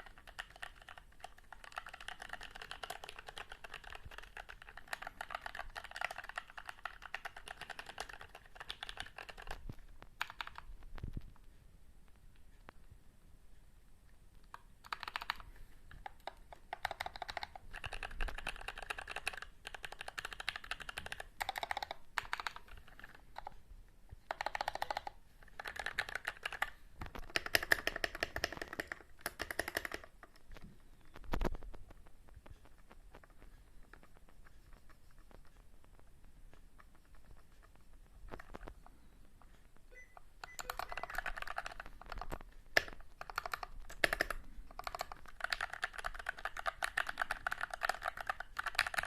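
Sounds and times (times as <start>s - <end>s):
mechanical keyboard typing: 0.0s - 10.8s, 14.5s - 23.6s, 24.2s - 30.6s, 39.4s - 49.0s.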